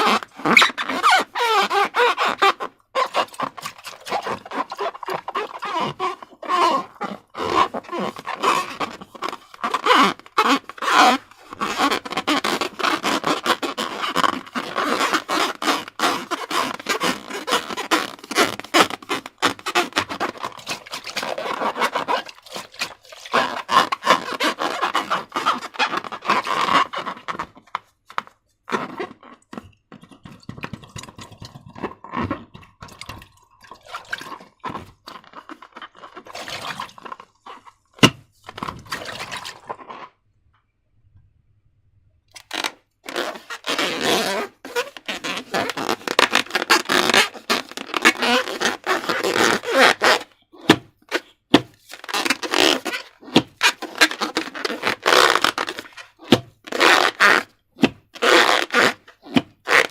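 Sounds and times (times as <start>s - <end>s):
slime squelching: 28.7s - 40.2s.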